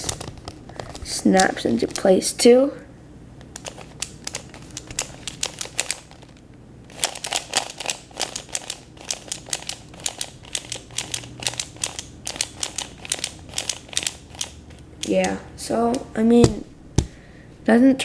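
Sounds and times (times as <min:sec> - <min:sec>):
speed cube layers clicking: 0:03.6 - 0:06.1, 0:07.0 - 0:15.4.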